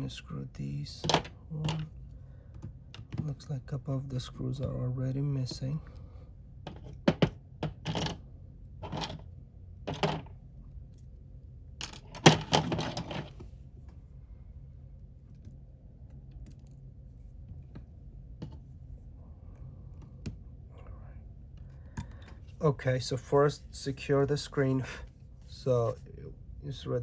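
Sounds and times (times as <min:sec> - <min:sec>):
faint low hum: 0:00.0 - 0:27.0
small metal screws clinking: 0:08.8 - 0:09.2.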